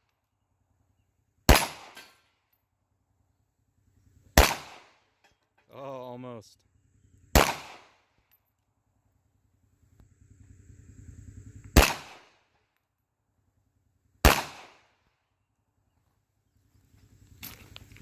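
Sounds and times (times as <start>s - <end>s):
pistol shots with echo: 1.5s - 2.2s, 4.4s - 5.1s, 7.3s - 8.1s, 11.8s - 12.4s, 14.2s - 15.0s.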